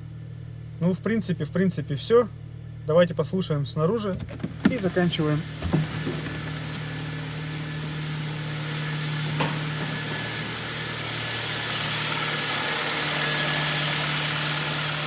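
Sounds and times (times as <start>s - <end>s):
car engine idling: 3.9s - 15.0s.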